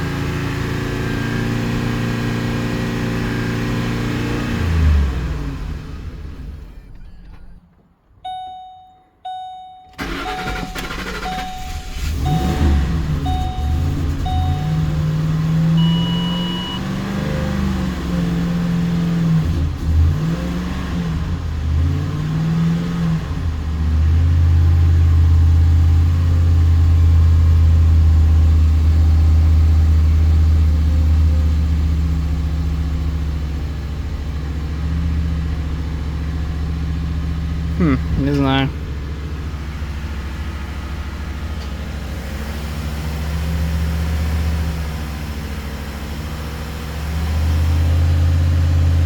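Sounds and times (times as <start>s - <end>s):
engine revving: 0.0s - 6.6s, 10.0s - 26.2s
short beep: 8.2s - 15.0s, 15.8s - 16.8s.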